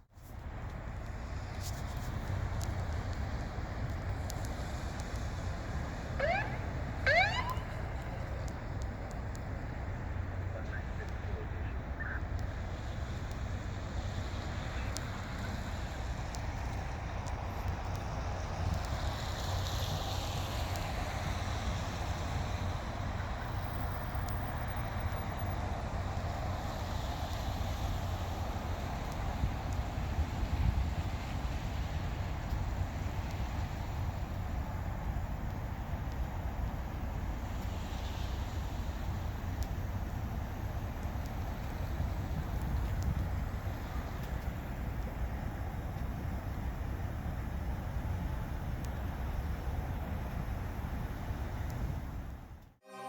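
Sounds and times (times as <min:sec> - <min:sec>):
constant hiss: 0:00.0 - 0:52.8
low engine rumble: 0:00.1 - 0:52.8
short rising siren chirps: 0:06.2 - 0:08.4.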